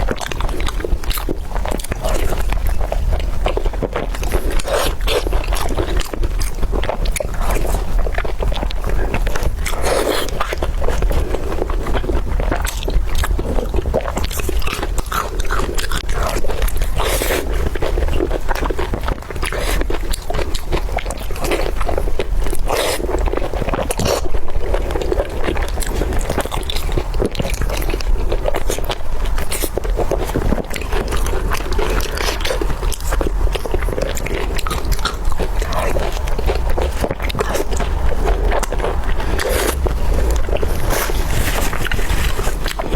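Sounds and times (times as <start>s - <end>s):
person chewing food: 0.0s - 42.9s
low hum: 32.8s - 42.9s.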